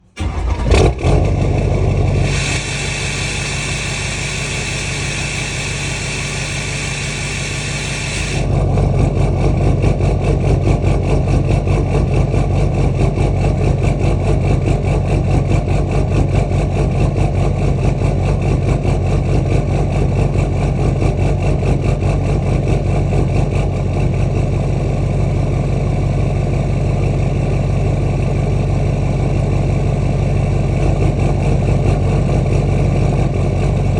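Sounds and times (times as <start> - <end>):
diesel engine idling roughly: 0.0 - 33.9
high hiss: 2.2 - 8.5.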